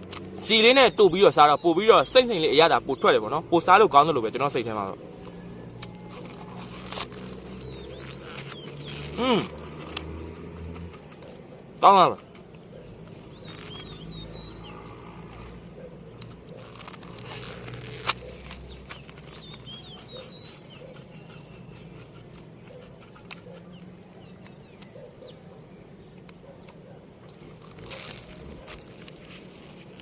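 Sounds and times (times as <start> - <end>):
person chewing crunchy snack: 5.0 - 15.5, 16.2 - 23.8, 27.3 - 30.0
small bird chirps: 5.1 - 10.0, 12.2 - 27.0.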